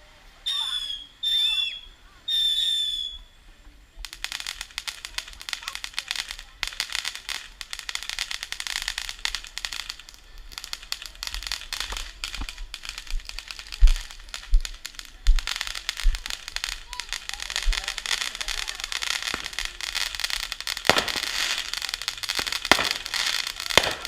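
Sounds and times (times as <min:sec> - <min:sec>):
fireworks crackling and popping: 0:00.0 - 0:24.0
firework whistle: 0:00.4 - 0:03.4.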